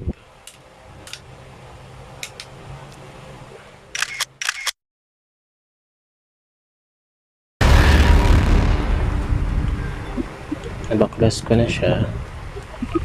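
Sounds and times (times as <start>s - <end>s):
faint steady hum: 0.0s - 4.3s.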